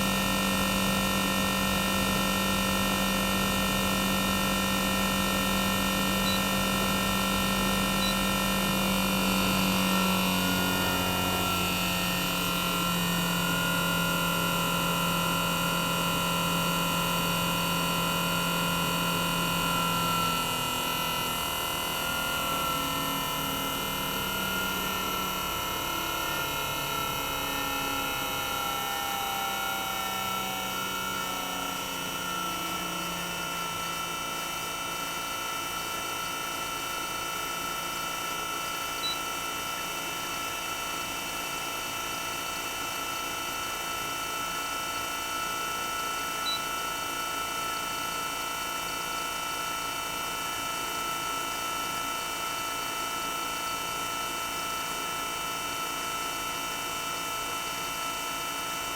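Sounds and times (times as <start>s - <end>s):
compressor whining: 0.0s - 36.0s.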